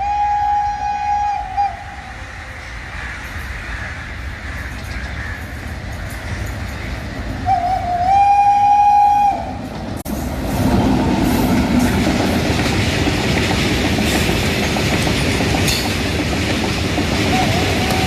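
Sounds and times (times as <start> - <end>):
locomotive air horn: 0.0 - 1.9, 7.5 - 9.6
train running on rails: 0.0 - 18.0
sharp clanks: 11.9 - 17.0.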